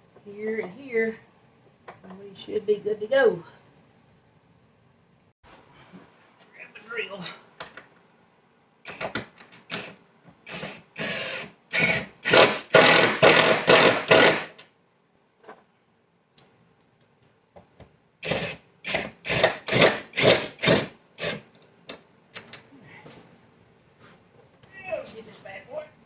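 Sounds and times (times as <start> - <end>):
power drill driving screws: 9.7 - 14.6, 18.2 - 21.5.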